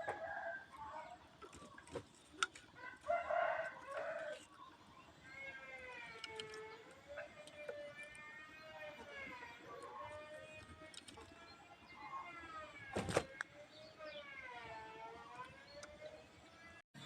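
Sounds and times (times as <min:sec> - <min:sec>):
rooster crowing: 0:00.0 - 0:01.0, 0:02.8 - 0:04.5
sharp clicks: 0:05.8 - 0:08.4.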